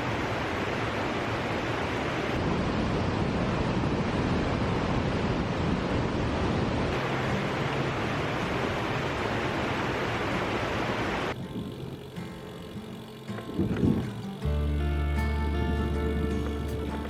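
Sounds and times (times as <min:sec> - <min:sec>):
waterfall roaring: 0:00.0 - 0:11.4.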